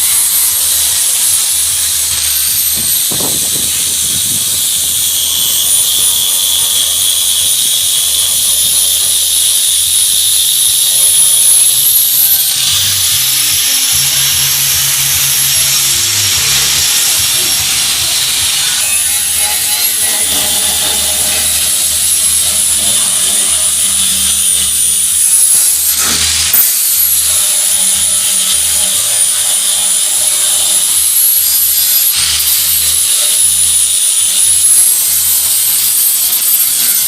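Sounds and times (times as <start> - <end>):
power tool whining: 0.0 - 37.0.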